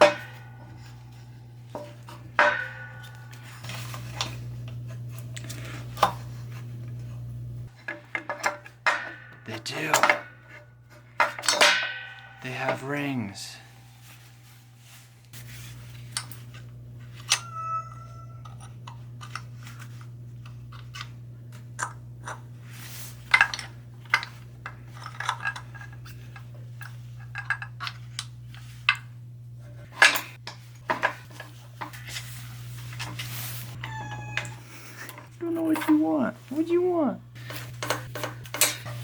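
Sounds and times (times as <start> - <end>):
metal parts clinking and clanking: 7.7 - 10.5, 11.1 - 13.6, 23.3 - 28.2, 37.4 - 39.0.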